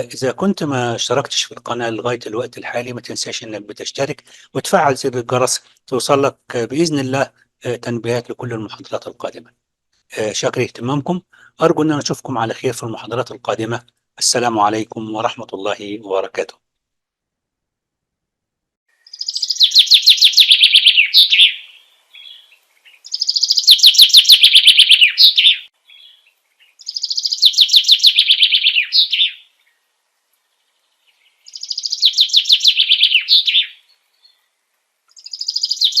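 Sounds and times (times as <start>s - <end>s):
songbird trilling: 19.0s - 29.8s, 30.8s - 34.4s, 35.1s - 36.0s.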